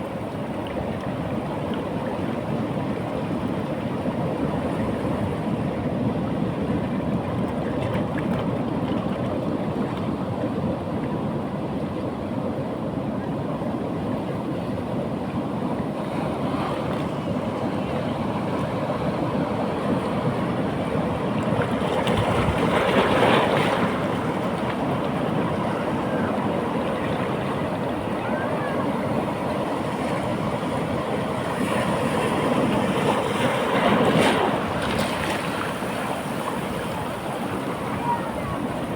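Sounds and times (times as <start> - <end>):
surf washing on a beach: 0.0 - 38.9
waves breaking: 15.7 - 38.9.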